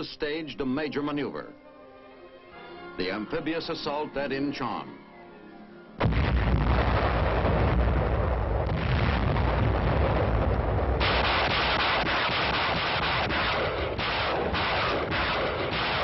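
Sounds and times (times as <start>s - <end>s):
gunfire and explosions: 6.0s - 16.0s
rapid repeated shots: 11.0s - 16.0s.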